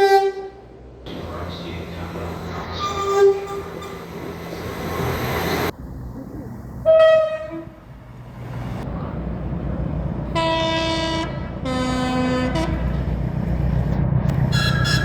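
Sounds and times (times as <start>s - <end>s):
train two-tone horn: 0.0s - 5.7s, 6.8s - 7.8s, 10.4s - 13.0s, 14.5s - 15.0s
moving train rumble: 0.0s - 15.0s.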